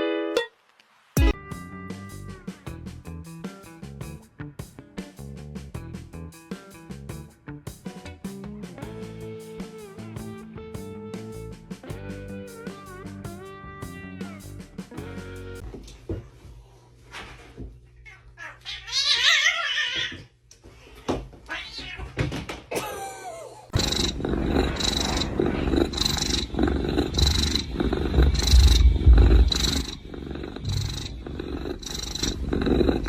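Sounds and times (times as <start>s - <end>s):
cat yowling: 18.1s - 20.2s
low rumble: 23.8s - 33.0s
noisy regular strokes: 23.8s - 33.0s.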